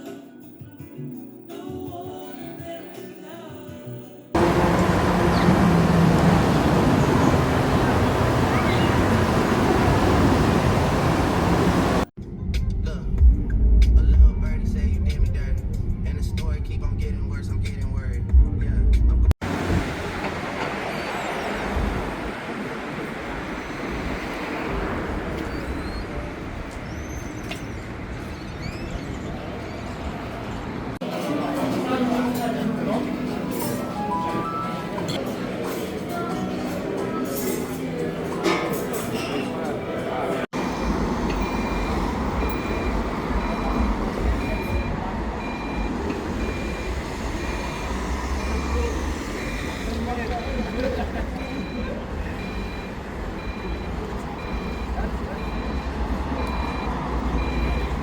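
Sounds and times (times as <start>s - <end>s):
faint high chirps: 4.4s - 10.7s
road vehicle rumble: 4.4s - 31.0s, 40.4s - 58.0s
short high warning beeps: 41.4s - 58.0s.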